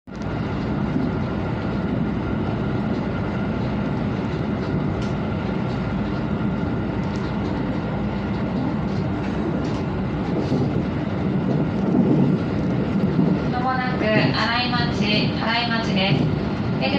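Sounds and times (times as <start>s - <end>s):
train rumbling: 0.1s - 16.9s.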